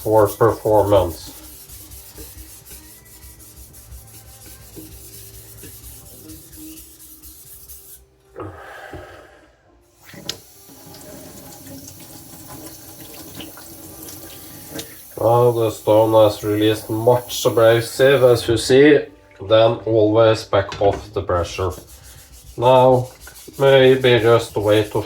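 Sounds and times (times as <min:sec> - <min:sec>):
blade grinding on wet whetstone: 0:00.0 - 0:08.0, 0:21.4 - 0:25.0.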